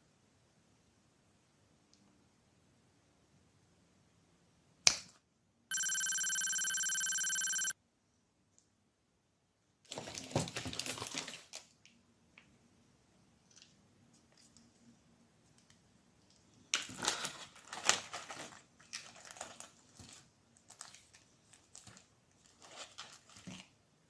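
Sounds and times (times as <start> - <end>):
steady electronic beep: 5.7 - 7.7.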